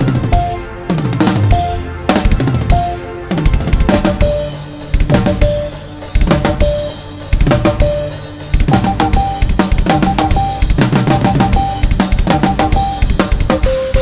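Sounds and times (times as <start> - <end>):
drum kit beat: 0.0 - 14.0
morse code beeps: 5.1 - 5.7, 6.3 - 14.0.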